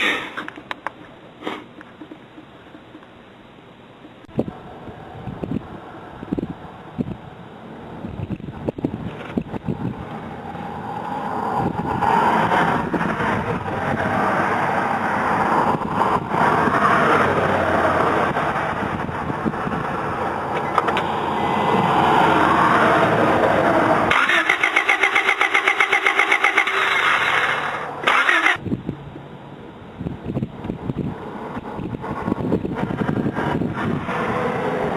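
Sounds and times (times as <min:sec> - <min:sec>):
rushing noise: 0:09.6 - 0:28.8, 0:31.0 - 0:34.9
engine cranking on starter: 0:24.1 - 0:28.6.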